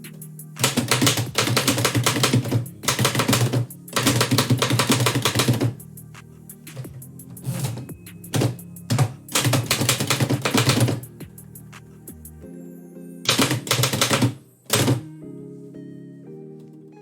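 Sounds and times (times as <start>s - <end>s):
background music: 0.0s - 17.0s
typewriter keystrokes: 0.6s - 5.8s, 6.7s - 11.1s, 13.3s - 15.1s.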